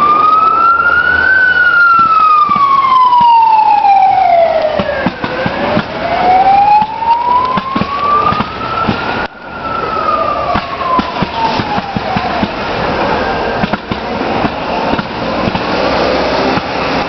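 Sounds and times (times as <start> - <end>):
wailing siren: 0.0 - 17.0.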